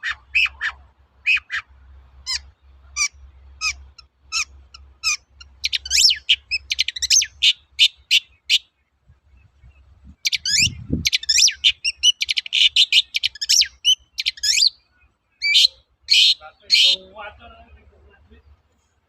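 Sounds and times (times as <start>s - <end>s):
bird chattering and whistling: 0.0s - 8.8s, 9.4s - 17.2s.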